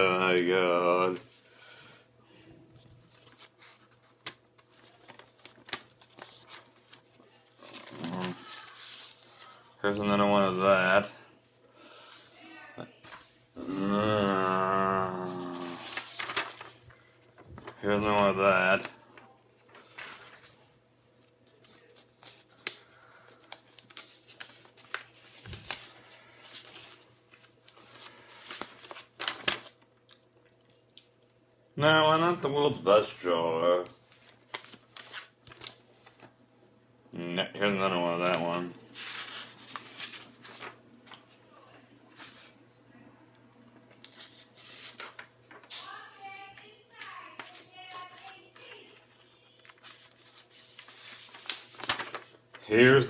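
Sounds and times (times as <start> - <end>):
paper sheets rustling: 2.7 - 9.7, 13.0 - 13.5, 15.3 - 29.9, 32.8 - 36.3, 37.9 - 41.4, 42.1 - 42.6, 43.8 - 53.0.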